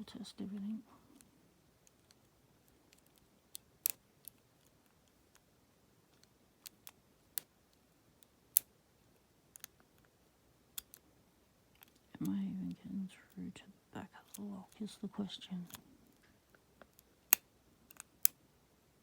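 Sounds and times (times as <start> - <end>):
lock pick clicking in padlock: 10.8 - 11.0.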